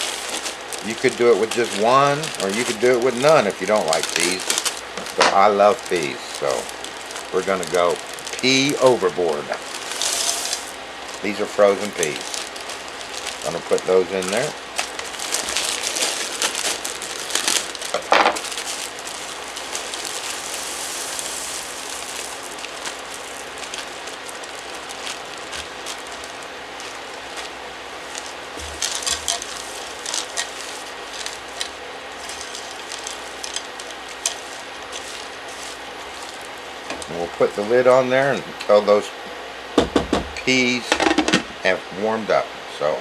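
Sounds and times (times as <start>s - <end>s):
peas rattling into a skillet: 0.0s - 37.6s
food sizzling in a skillet: 5.9s - 13.6s, 14.5s - 37.1s.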